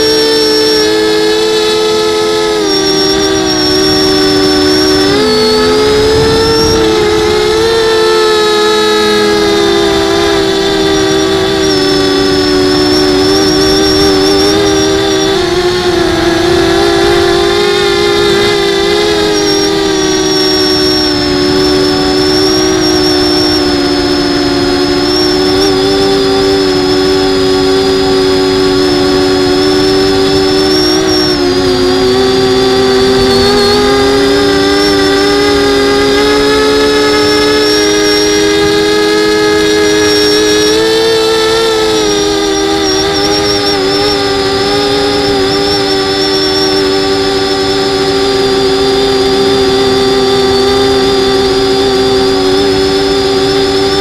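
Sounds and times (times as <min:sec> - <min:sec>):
quadcopter motors whining: 0:00.0 - 0:54.0.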